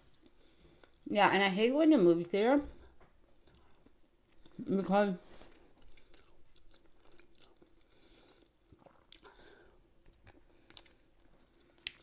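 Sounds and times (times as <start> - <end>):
chewing food: 2.8 - 4.7, 5.4 - 12.0.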